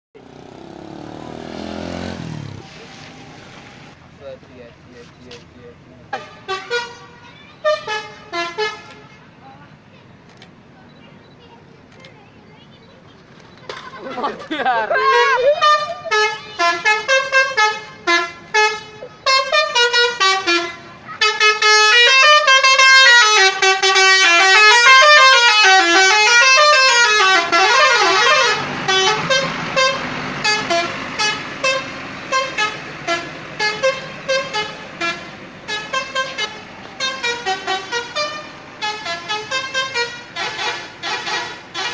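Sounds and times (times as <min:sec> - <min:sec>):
bus multi-tone horn toots: 0:06.1 - 0:09.6, 0:15.1 - 0:41.9.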